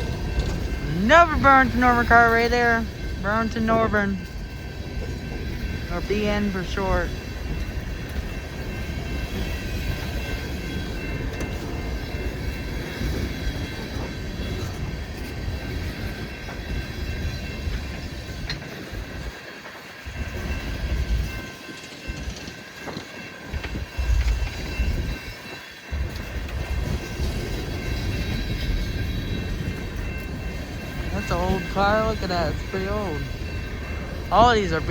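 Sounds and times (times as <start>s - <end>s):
train wheels rumbling and clacking: 0.0s - 34.9s
high-pitched wheel ringing: 20.0s - 34.9s.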